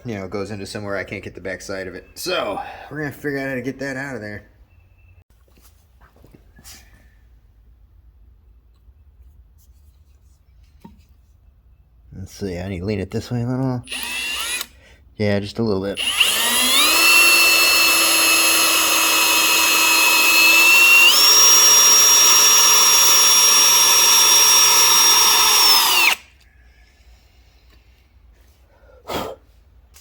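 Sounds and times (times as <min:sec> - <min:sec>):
electric drill whining: 0:13.9 - 0:14.8, 0:16.0 - 0:26.3.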